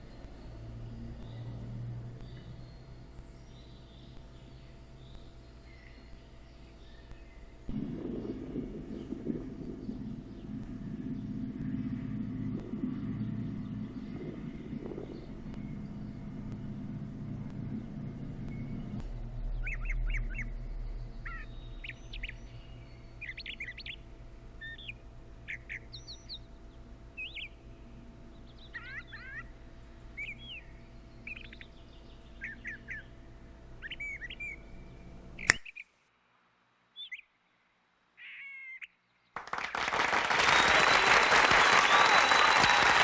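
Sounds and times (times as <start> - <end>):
small birds chirping: 0.0 - 7.7, 8.5 - 35.9, 37.0 - 37.4, 38.2 - 39.4
low steady hum: 0.0 - 43.0.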